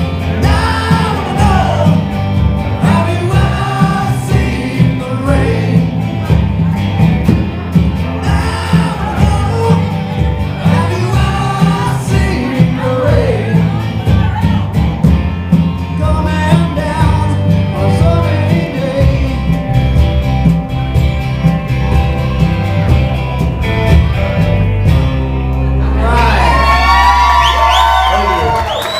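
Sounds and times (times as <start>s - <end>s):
live rock band playing: 0.0s - 28.9s
audience whooping and cheering: 25.8s - 28.9s.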